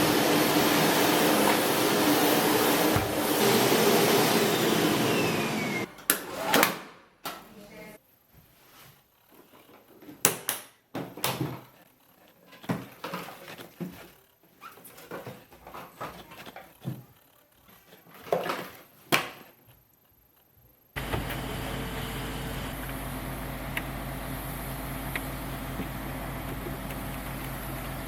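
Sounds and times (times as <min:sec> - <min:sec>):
vacuum cleaner motor running: 0:00.0 - 0:06.5, 0:21.0 - 0:28.0.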